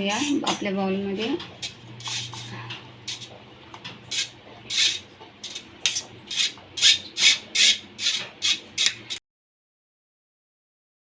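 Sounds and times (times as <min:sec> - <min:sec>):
corn being scraped: 0:01.6 - 0:03.3, 0:04.1 - 0:09.2.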